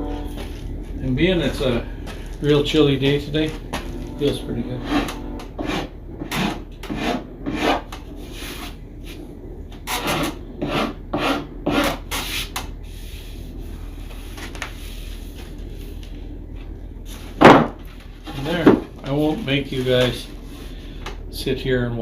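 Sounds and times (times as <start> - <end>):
rubbing strokes on plywood edge: 4.8 - 9.2, 9.9 - 13.4.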